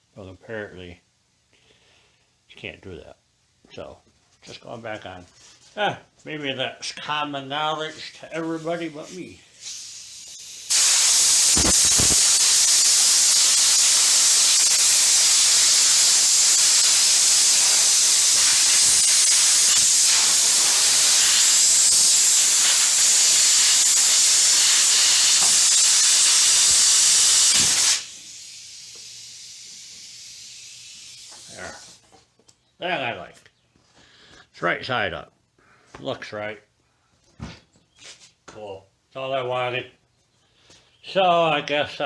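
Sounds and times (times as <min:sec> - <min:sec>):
compressed air hissing: 0:08.4 - 0:32.0.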